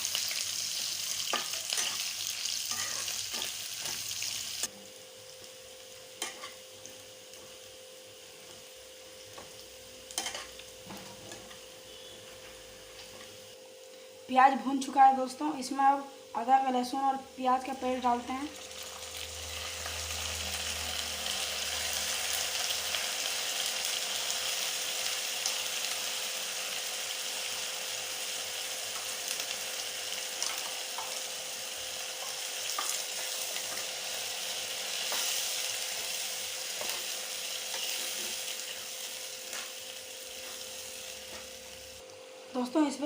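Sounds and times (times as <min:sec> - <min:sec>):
paste sizzling in hot oil: 0:00.0 - 0:10.8, 0:18.6 - 0:42.0.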